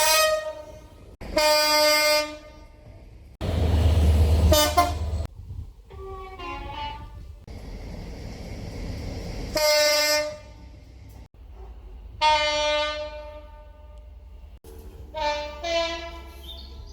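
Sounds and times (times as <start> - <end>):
train horn blasts: 0.0 - 2.9, 4.4 - 5.3, 5.9 - 7.3, 9.5 - 10.7, 12.1 - 14.2, 15.1 - 16.6.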